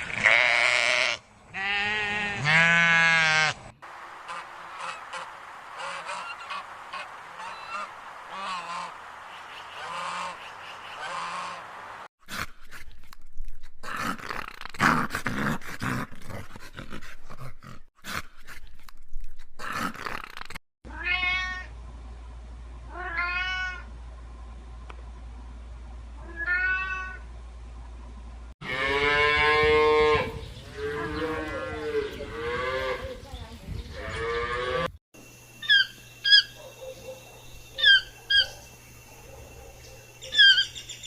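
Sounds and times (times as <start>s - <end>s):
repeated animal calls: 0.2s - 12.8s, 35.6s - 41.0s
cat meowing: 22.9s - 23.9s, 26.2s - 27.2s.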